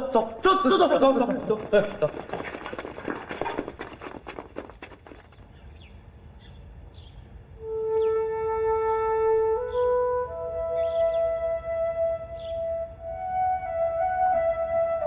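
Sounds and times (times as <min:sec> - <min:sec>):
knocks or steps: 0:00.0 - 0:05.4
flute music: 0:07.6 - 0:15.0.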